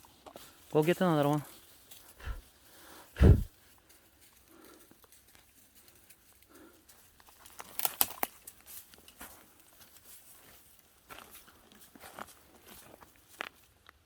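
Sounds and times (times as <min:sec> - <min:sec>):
footsteps on leaf litter and twigs: 0:03.5 - 0:13.8
twigs snapping: 0:07.4 - 0:09.2.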